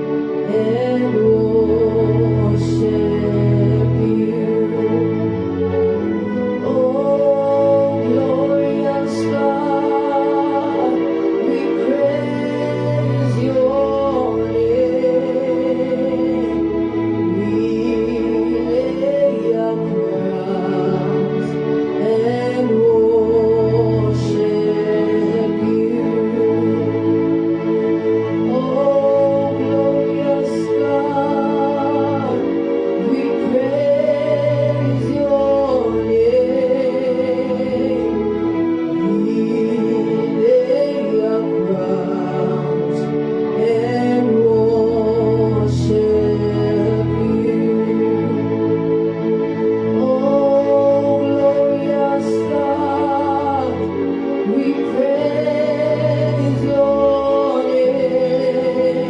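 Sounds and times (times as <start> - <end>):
gospel worship singing: 0.0 - 59.0
sustained instrumental chords: 0.0 - 59.0.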